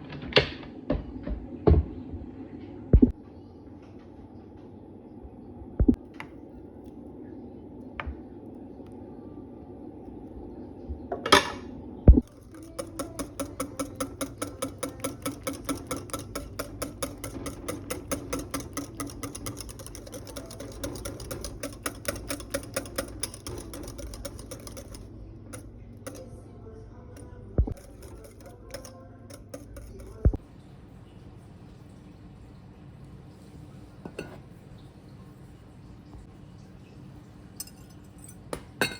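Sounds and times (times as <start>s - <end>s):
scattered clicks: 12.2s - 26.3s
blender rattling over motor hum: 12.2s - 26.4s, 27.2s - 30.4s.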